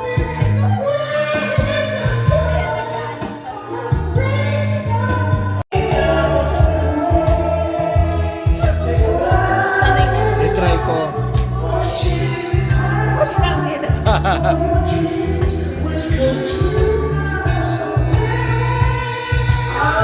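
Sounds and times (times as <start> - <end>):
song with heavy pulsing bass: 5.7 - 20.0.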